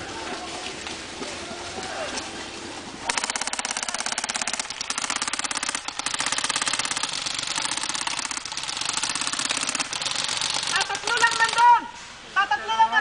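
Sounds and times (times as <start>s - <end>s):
airsoft guns firing rapidly: 3.1s - 11.8s.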